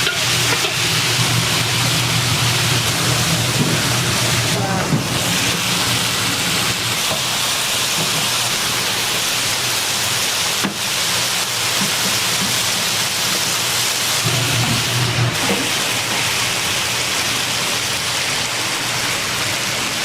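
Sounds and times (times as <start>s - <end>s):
food frying in hot oil: 0.0s - 20.0s.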